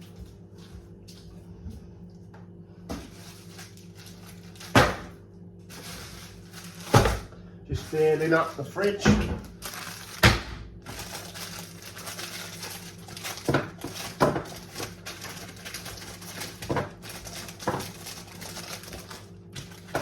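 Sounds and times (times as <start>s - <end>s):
steady low hum: 0.0s - 20.0s
knocks and clunks in a fridge: 2.4s - 3.2s, 4.6s - 5.3s, 6.8s - 10.9s, 13.4s - 14.9s, 16.6s - 18.0s.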